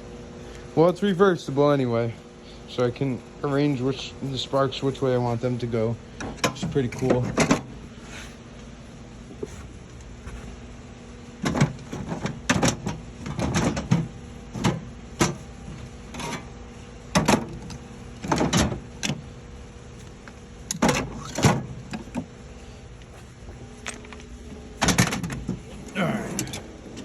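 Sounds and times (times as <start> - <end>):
rattling drawer contents: 6.3 - 8.4, 11.4 - 15.4, 23.1 - 27.0
toolbox drawers sliding open and shut: 11.4 - 15.4, 20.7 - 22.3, 24.8 - 25.7.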